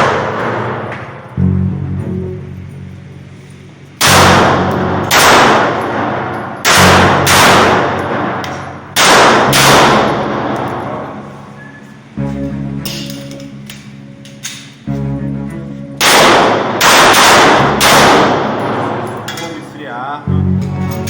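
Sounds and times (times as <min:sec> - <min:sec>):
pistol shots ringing: 0:00.0 - 0:01.4, 0:03.4 - 0:11.3, 0:12.8 - 0:14.9, 0:16.0 - 0:19.7
background music: 0:00.0 - 0:21.0.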